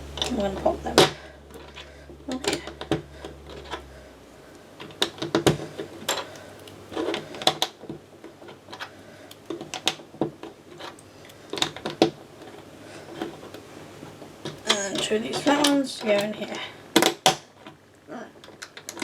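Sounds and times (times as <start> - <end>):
plastic bricks clicking and rattling: 18.4 - 19.0.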